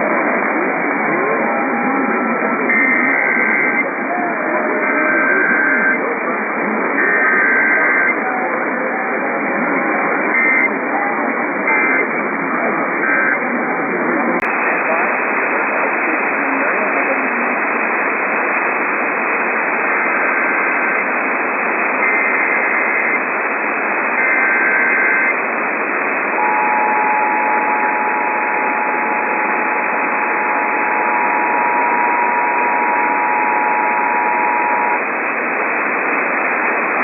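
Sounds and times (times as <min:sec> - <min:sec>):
radio static hiss: 0:00.0 - 0:37.0
bursts of data tones: 0:02.6 - 0:06.1, 0:06.9 - 0:08.2, 0:10.2 - 0:10.8, 0:11.6 - 0:12.2, 0:19.6 - 0:37.0
two-tone attention signal: 0:04.8 - 0:06.0, 0:24.2 - 0:25.3, 0:26.4 - 0:35.0.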